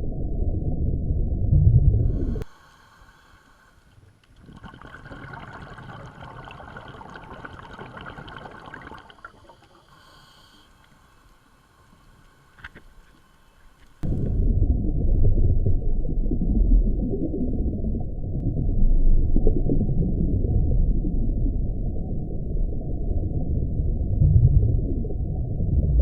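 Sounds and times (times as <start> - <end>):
muffled low rumble: 0.0 - 2.5, 14.0 - 26.0
water sound: 2.0 - 26.0.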